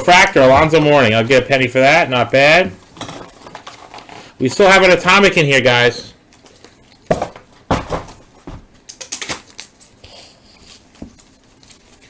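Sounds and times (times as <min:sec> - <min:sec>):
cards and wrappers rustling: 0:02.8 - 0:04.4, 0:06.4 - 0:12.0.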